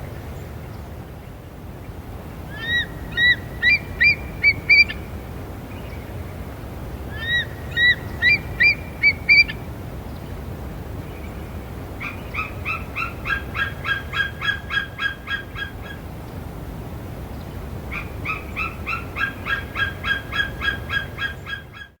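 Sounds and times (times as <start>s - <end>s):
eagle calling: 2.5s - 5.0s, 7.2s - 9.6s.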